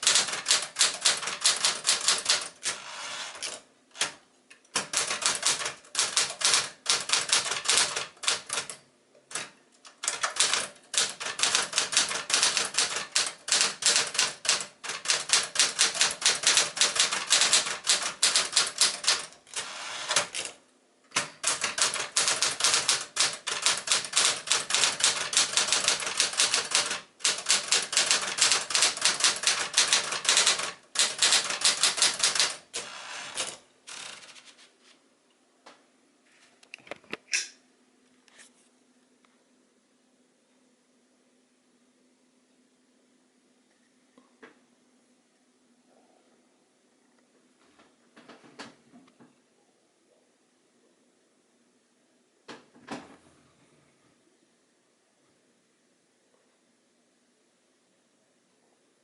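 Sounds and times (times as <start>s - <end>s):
manual typewriter key strikes: 0.0s - 2.8s, 3.4s - 34.1s.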